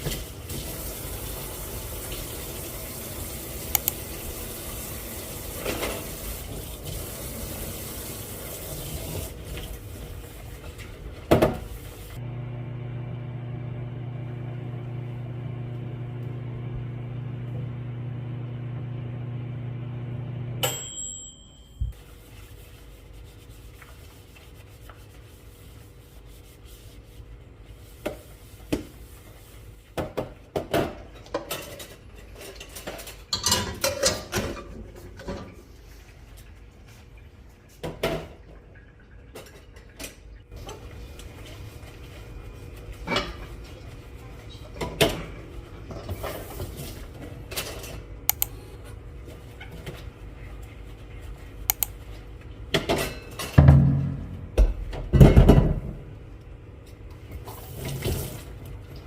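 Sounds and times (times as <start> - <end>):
microwave oven humming: 9.4 - 22.2.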